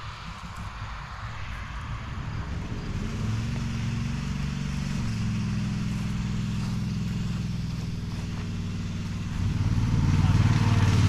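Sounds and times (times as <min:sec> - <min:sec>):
mower engine running: 0:00.0 - 0:11.0.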